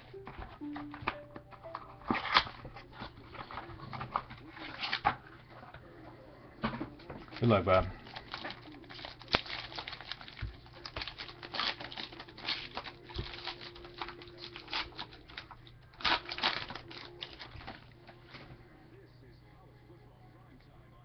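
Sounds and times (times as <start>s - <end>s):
card pack crinkling: 0.2s - 5.3s, 7.2s - 18.3s.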